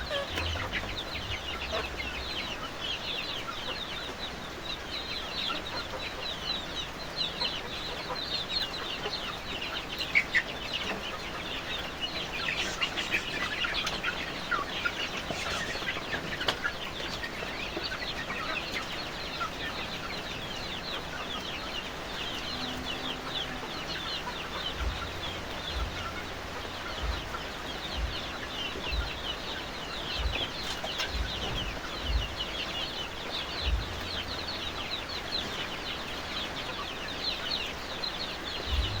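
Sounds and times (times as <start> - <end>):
chickens calling: 0.0 - 39.0
low knocks: 24.8 - 26.4, 30.2 - 32.6, 33.6 - 34.5, 38.7 - 39.0.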